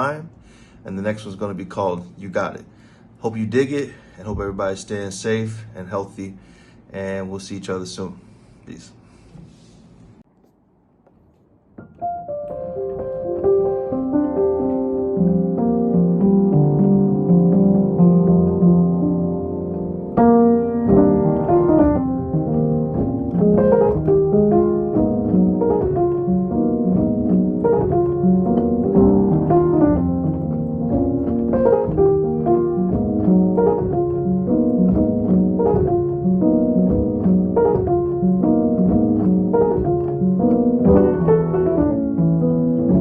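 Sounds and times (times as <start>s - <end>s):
piano music: 11.8s - 43.0s.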